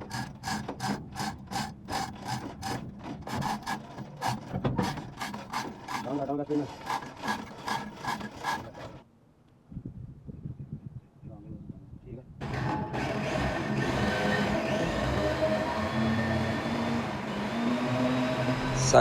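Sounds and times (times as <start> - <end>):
hand tool rasping strokes: 0.0 - 9.0.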